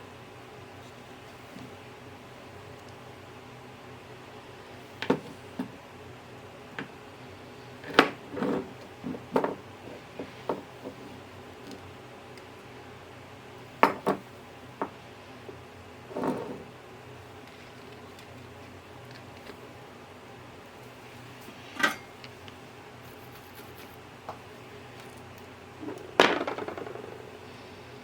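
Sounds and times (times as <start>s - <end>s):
faint steady hum: 0.0s - 28.0s.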